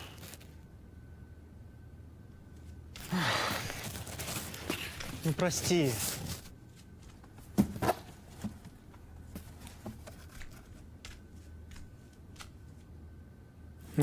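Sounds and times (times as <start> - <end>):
rustling handling noise: 2.5 - 12.9.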